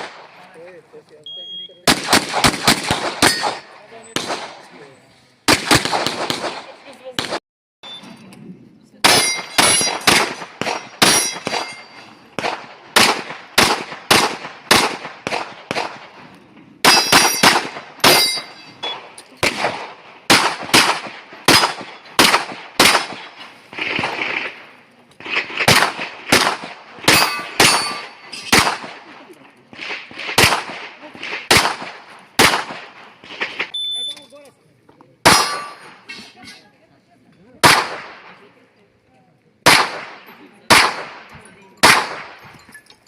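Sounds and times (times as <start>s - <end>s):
gunshots: 0.0s - 0.4s, 1.8s - 7.4s, 9.0s - 33.8s, 35.2s - 36.2s, 37.6s - 38.4s, 39.6s - 42.6s
steel targets ringing: 9.1s - 10.1s, 10.8s - 12.3s, 16.9s - 19.2s, 27.1s - 28.5s, 35.3s - 36.3s.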